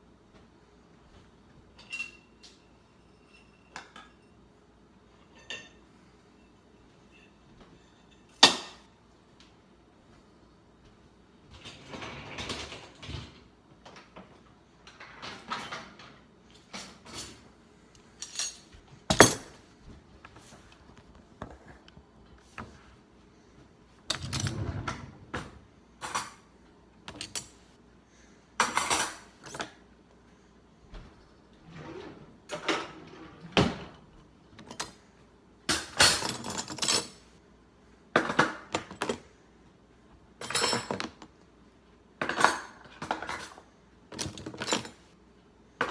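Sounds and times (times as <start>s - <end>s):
dishes and cutlery clattering: 1.7s - 4.4s, 5.2s - 5.8s, 40.4s - 41.2s, 42.2s - 43.6s.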